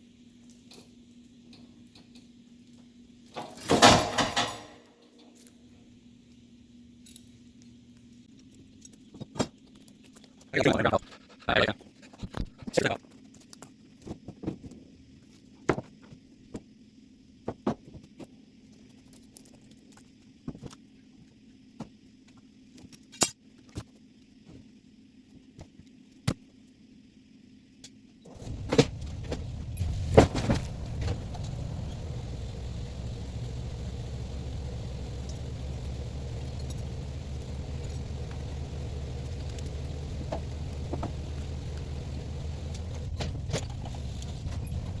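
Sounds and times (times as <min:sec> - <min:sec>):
engine starting and idling: 0:03.5 - 0:04.7, 0:28.3 - 0:45.0.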